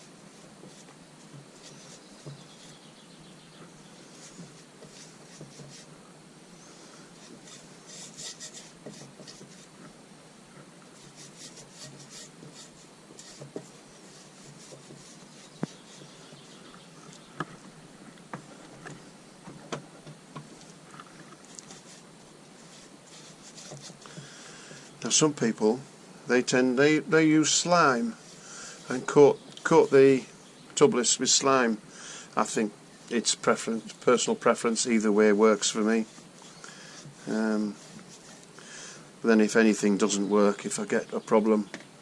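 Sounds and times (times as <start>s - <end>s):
hands rubbing on tyre: 0.0s - 6.0s, 6.6s - 10.0s, 10.9s - 17.7s, 20.5s - 25.3s, 35.6s - 38.6s.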